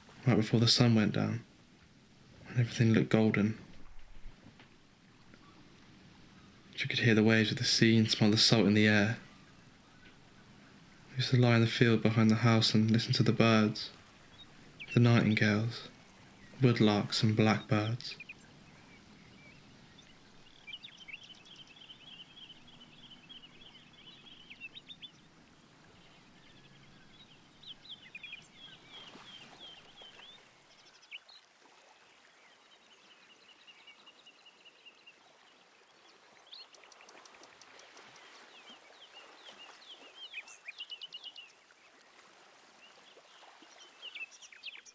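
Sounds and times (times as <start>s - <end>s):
soft outdoor hiss: 0.0s - 31.3s
songbirds chirping and trilling: 0.0s - 31.4s, 32.4s - 42.0s, 42.8s - 44.9s.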